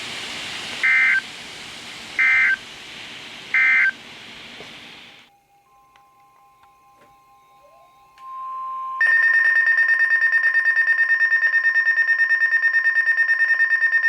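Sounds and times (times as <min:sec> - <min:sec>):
fast-pulsing electronic alarm: 0:00.8 - 0:01.2, 0:02.2 - 0:02.6, 0:03.6 - 0:04.0, 0:07.4 - 0:14.0
faint steady tones: 0:03.5 - 0:09.2.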